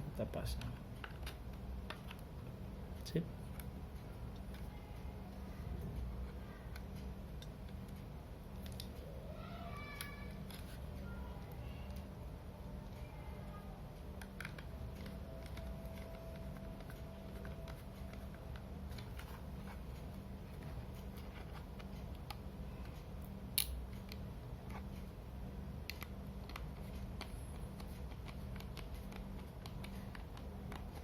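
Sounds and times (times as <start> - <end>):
steady low hum: 0.0 - 31.0
laptop parts clicking: 14.1 - 20.0, 21.0 - 25.1, 25.8 - 31.0.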